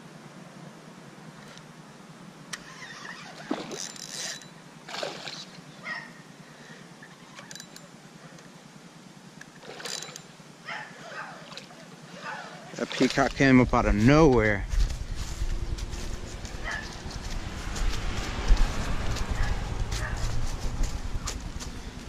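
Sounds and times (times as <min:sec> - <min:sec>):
fish splashing at surface: 0:12.5 - 0:13.4
wind noise: 0:13.6 - 0:22.0.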